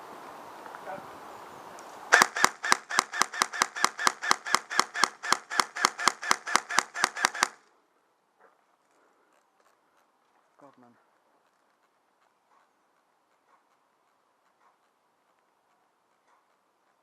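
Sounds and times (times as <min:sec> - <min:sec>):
airsoft gun shots: 0:02.1 - 0:07.7.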